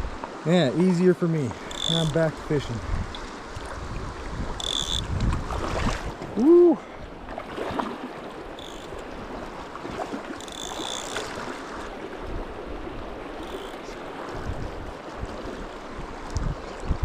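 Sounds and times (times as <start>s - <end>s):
brief high chirps: 4.6s - 5.0s.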